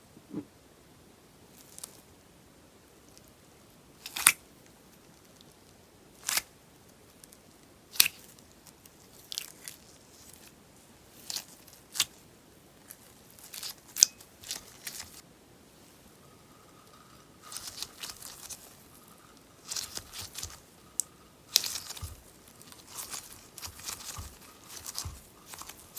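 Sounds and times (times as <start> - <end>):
scissors cutting crackly slime: 4.1 - 4.4, 8.0 - 8.3, 17.5 - 18.7, 19.6 - 25.9.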